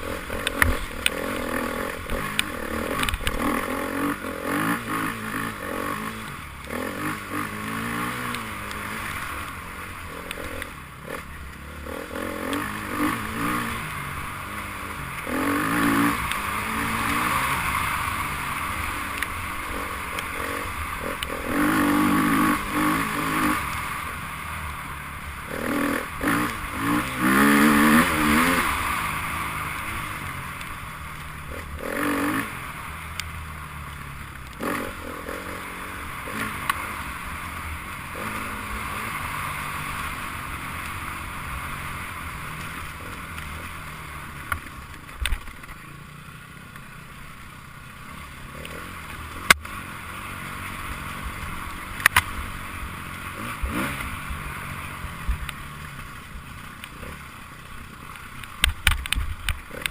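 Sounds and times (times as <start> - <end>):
motorcycle engine revving: 0.0 - 59.9
sharp clicks: 0.1 - 3.5, 58.1 - 59.9.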